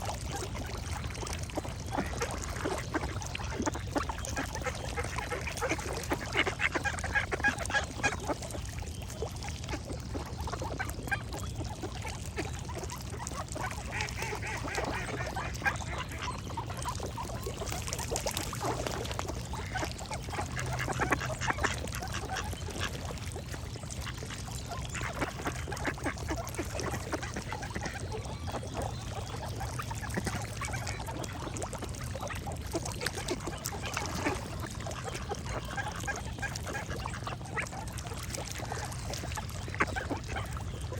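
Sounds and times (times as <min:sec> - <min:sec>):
ducks quacking: 0:01.9 - 0:08.4, 0:12.3 - 0:17.7, 0:18.5 - 0:38.0.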